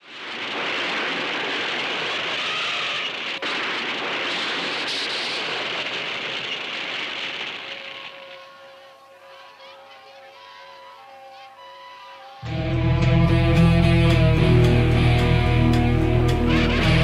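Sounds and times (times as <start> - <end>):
steady rushing hiss: 0.0 - 12.5.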